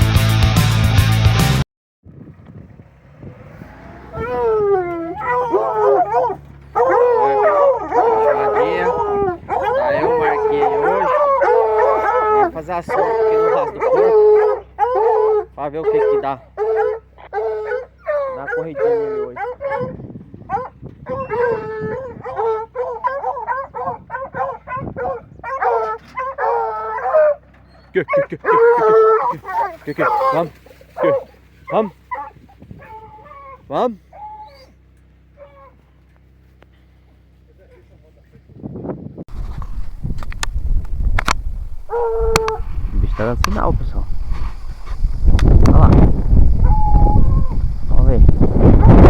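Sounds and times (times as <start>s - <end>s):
rock music: 0.0s - 1.6s
dogs howling: 3.6s - 34.8s, 35.4s - 35.8s, 41.9s - 49.0s.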